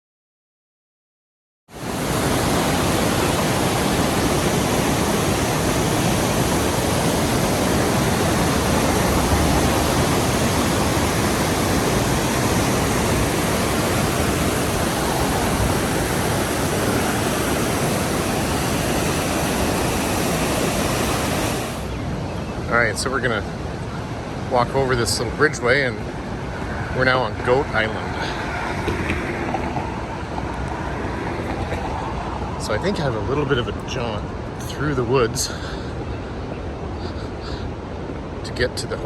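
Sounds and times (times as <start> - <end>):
river rapids rushing: 1.8 - 22.0.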